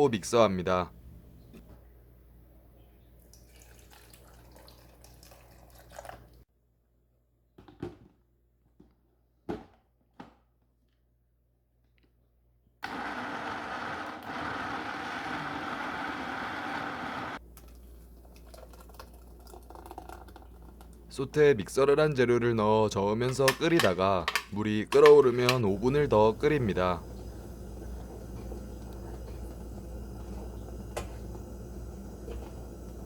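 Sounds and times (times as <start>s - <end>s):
electric blender running: 12.8s - 17.4s.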